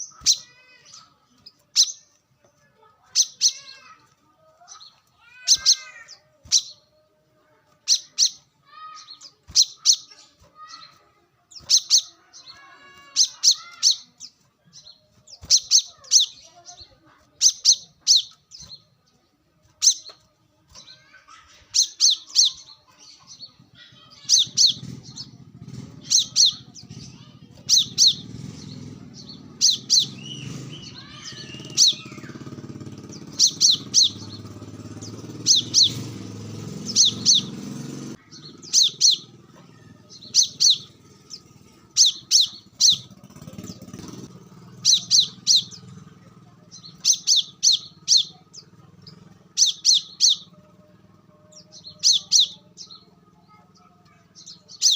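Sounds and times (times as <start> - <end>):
bird sharp high chirps: 0.0 - 2.2, 2.8 - 7.1, 7.8 - 46.0, 46.6 - 50.6, 51.5 - 54.9
other birds calling: 0.0 - 54.9
low motor rumble: 24.4 - 54.8.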